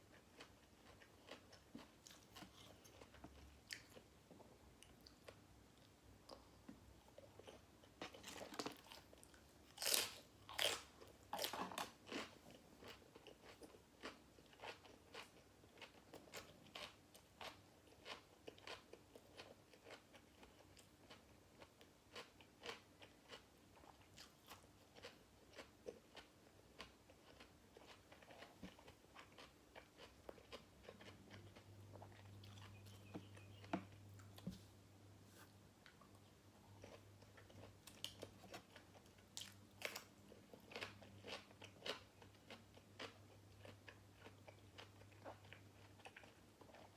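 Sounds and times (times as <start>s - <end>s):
crunching crisp food: 0.1s - 4.1s, 7.2s - 34.5s, 36.7s - 46.9s
chewing with wet mouth clicks: 22.1s - 34.4s.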